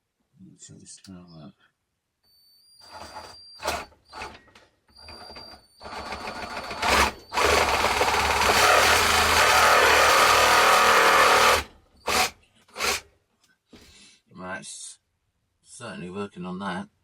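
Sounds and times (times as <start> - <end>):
reciprocating saw cutting: 5.8 - 13.0.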